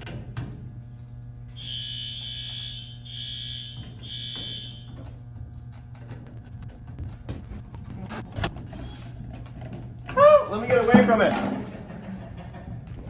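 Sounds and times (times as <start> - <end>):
steady low hum: 0.0 - 13.0
fire alarm horn blasts: 1.5 - 5.2.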